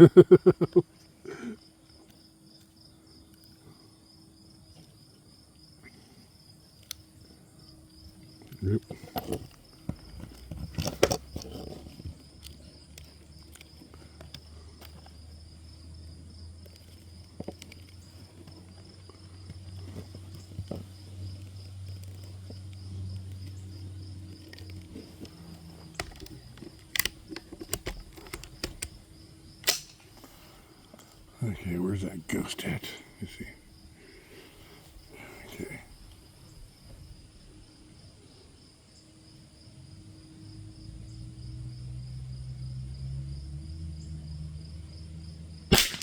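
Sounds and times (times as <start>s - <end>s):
crickets chirping: 0.0s - 46.0s
rifle shots: 29.6s - 30.1s, 45.7s - 46.0s.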